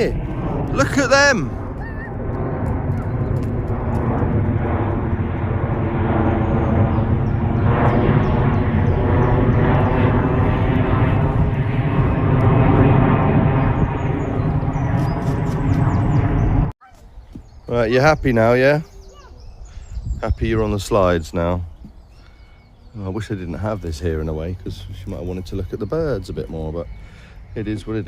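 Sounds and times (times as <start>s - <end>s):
jet airliner passing overhead: 0.0s - 16.7s, 18.0s - 28.0s.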